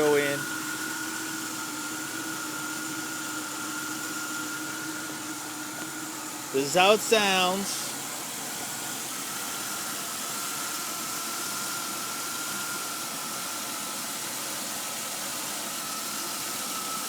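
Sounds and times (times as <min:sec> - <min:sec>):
high whine: 0:06.5 - 0:08.0.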